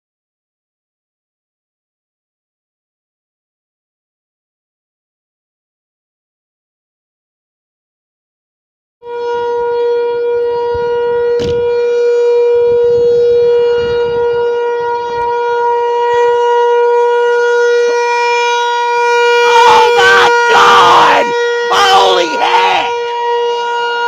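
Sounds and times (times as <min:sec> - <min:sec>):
warning siren steady tone: 0:09.0 - 0:24.0
wavering higher siren tones: 0:09.0 - 0:24.0.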